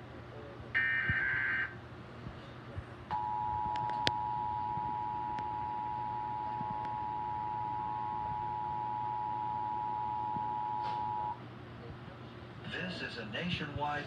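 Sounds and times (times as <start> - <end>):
two-tone attention signal: 0.8 - 1.8, 3.1 - 11.4.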